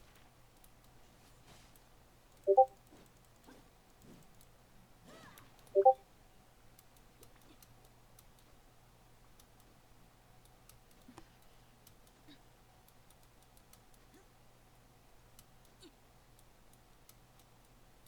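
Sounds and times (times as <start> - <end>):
low steady hum: 0.0 - 3.2
faint clicks: 0.0 - 4.6, 5.4 - 6.0, 6.6 - 18.0
electronic double beep: 2.5 - 2.7, 5.8 - 6.0.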